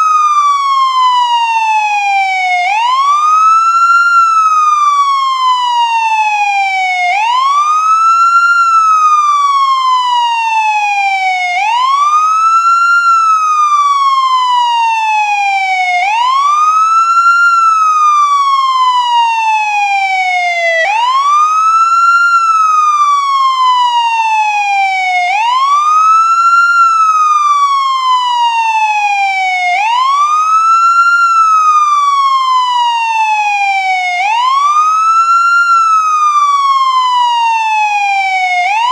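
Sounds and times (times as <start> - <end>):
ambulance siren wailing: 0.0 - 38.9.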